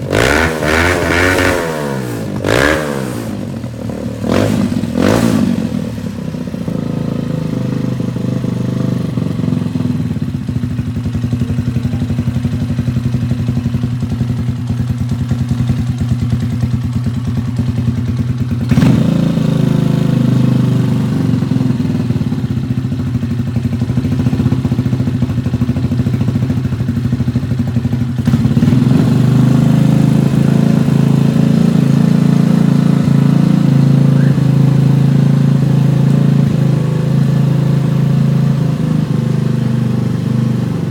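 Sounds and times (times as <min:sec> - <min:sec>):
motorcycle engine idling: 0:02.1 - 0:40.9
engine revving blip: 0:33.2 - 0:36.8.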